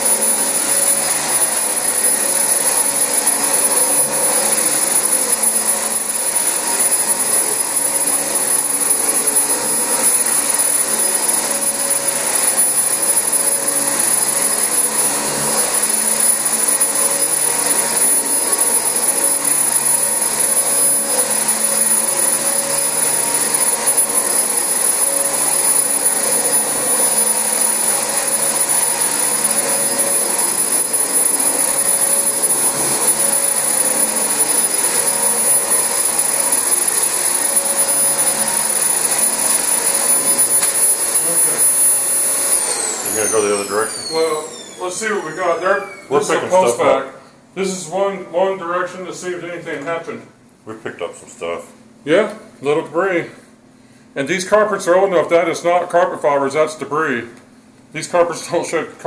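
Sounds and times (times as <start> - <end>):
high-pitched whine: 0.0 - 46.0
vacuum cleaner running on carpet: 0.0 - 46.0.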